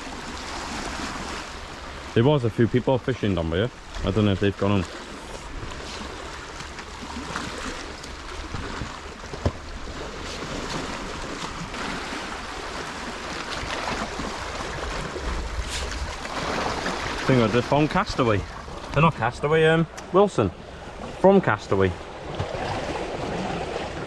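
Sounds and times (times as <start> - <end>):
sea water washing on shore: 0.0 - 24.0
wind rumbling on microphone: 14.1 - 17.3.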